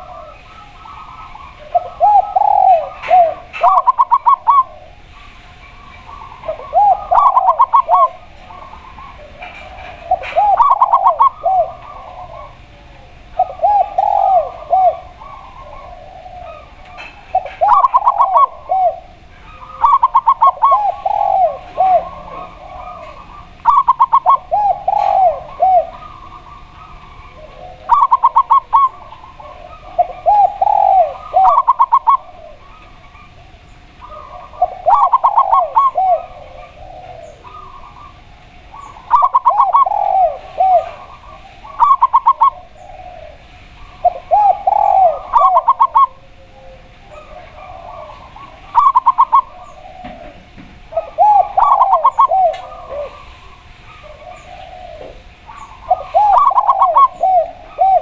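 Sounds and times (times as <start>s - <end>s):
doves cooing: 0.0s - 58.0s.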